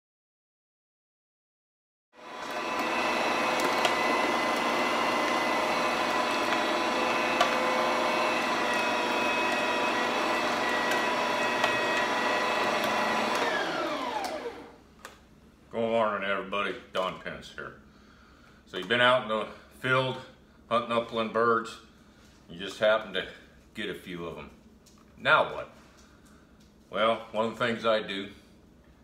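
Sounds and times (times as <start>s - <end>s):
electric meat grinder motor running: 2.2s - 14.8s.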